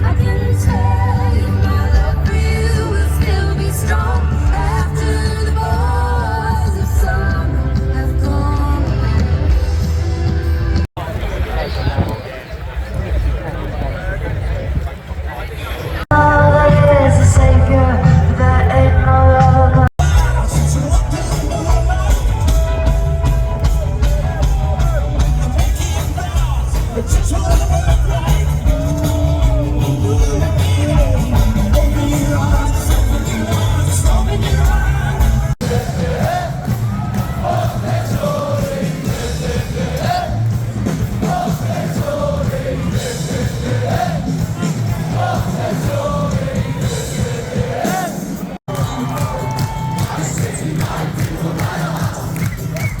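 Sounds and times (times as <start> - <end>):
rock music with singing: 0.0 - 10.8, 16.1 - 53.0
live band playing: 0.0 - 10.9, 16.1 - 51.0
person singing: 16.1 - 36.4.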